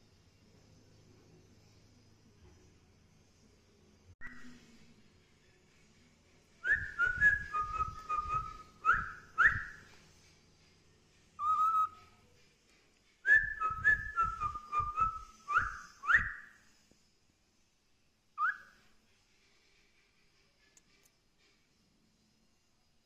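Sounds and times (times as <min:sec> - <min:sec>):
cockatiel whistling: 0:06.6 - 0:10.0, 0:11.4 - 0:12.2, 0:13.2 - 0:16.6, 0:18.4 - 0:18.8.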